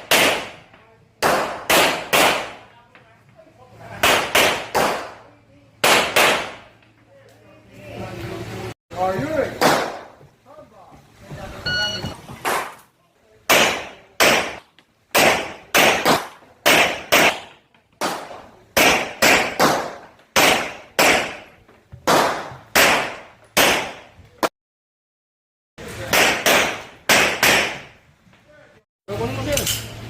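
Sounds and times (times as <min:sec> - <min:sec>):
pistol shots echoing: 0:00.0 - 0:02.7, 0:04.0 - 0:05.2, 0:05.8 - 0:06.7, 0:13.5 - 0:24.1.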